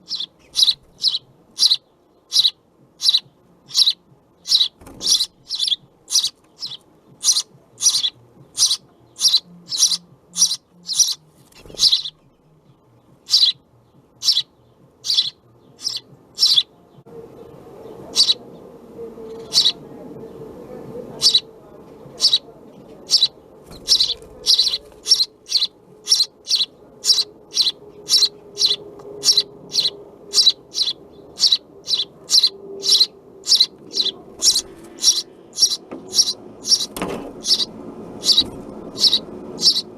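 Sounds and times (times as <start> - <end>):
sparrow chirping: 0.0 - 39.9.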